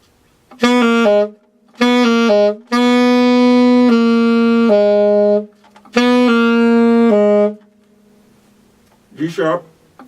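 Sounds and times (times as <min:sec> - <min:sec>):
alto saxophone notes: 0:00.5 - 0:08.6.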